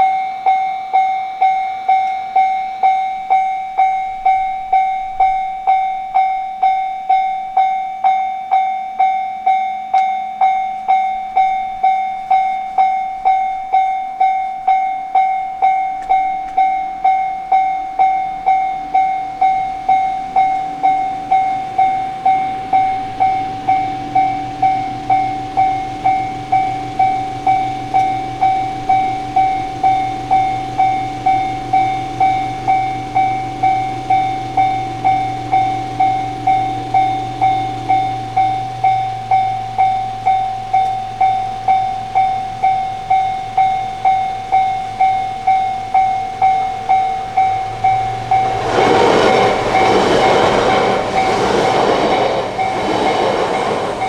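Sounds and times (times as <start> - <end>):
level crossing alarm bell: 0.0 - 54.0
train passing on rails: 0.0 - 54.0.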